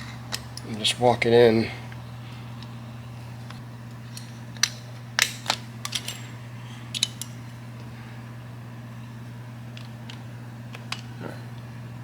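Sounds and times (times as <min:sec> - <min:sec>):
steady low hum: 0:00.0 - 0:12.0
sharp metal clicks and clinks: 0:04.1 - 0:07.4.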